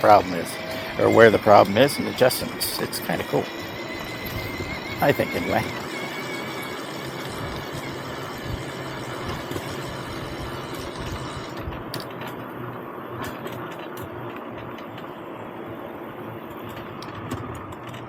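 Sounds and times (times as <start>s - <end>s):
bicycle tyre noise: 0.0s - 18.0s
wind on microphone: 4.0s - 5.3s, 7.3s - 11.8s.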